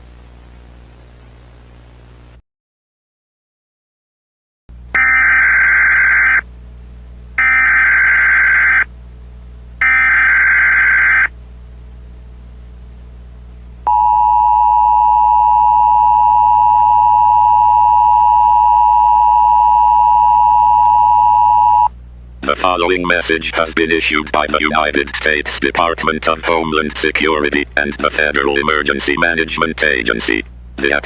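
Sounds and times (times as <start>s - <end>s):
two-tone attention signal: 13.9s - 21.9s.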